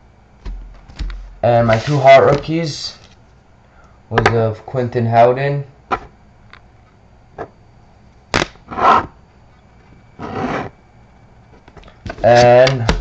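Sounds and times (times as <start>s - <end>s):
card scraping rubs: 8.7s - 9.2s, 10.2s - 10.8s.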